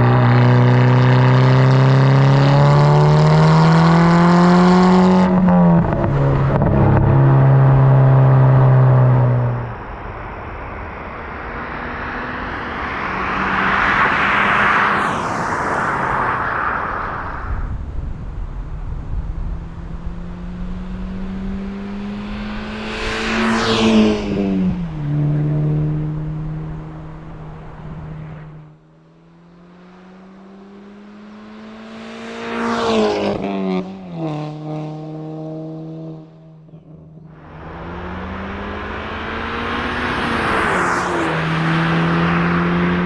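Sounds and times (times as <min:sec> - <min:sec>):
car exhaust under acceleration: 0:00.0 - 0:15.0, 0:16.8 - 0:28.8, 0:33.9 - 0:43.0.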